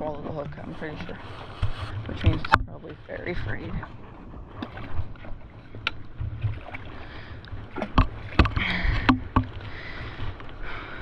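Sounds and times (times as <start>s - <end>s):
knocks and bumps on boat: 0.0s - 4.0s, 7.7s - 9.6s
wind rumble on microphone: 0.0s - 10.3s.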